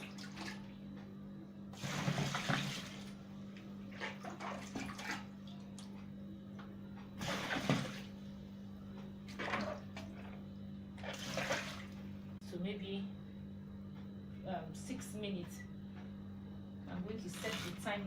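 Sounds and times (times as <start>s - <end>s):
water pouring and splashing: 1.8s - 3.0s.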